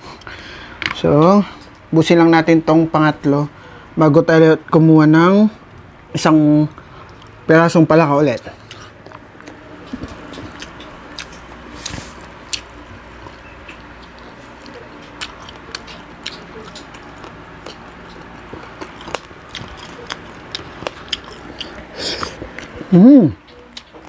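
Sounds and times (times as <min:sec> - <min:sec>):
chewing and crunching: 0:06.8 - 0:07.4, 0:08.3 - 0:24.0.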